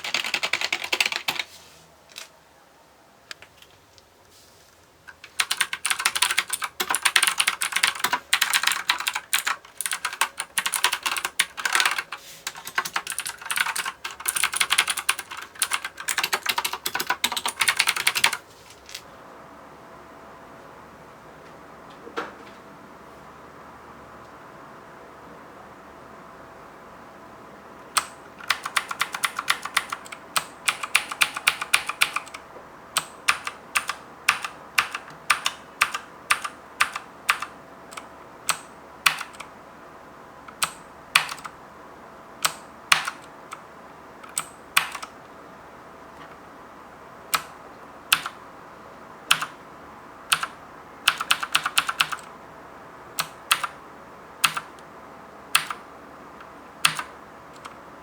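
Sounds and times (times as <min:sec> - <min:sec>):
clicky mechanical keyboard typing: 0:00.0 - 0:01.5, 0:05.1 - 0:18.4, 0:27.9 - 0:32.4, 0:33.0 - 0:39.5, 0:40.5 - 0:41.6, 0:42.4 - 0:43.6, 0:44.2 - 0:45.2, 0:47.3 - 0:47.5, 0:48.1 - 0:48.4, 0:49.3 - 0:49.6, 0:50.3 - 0:52.3, 0:53.2 - 0:53.8, 0:54.4 - 0:54.8, 0:55.5 - 0:55.8, 0:56.4 - 0:57.8.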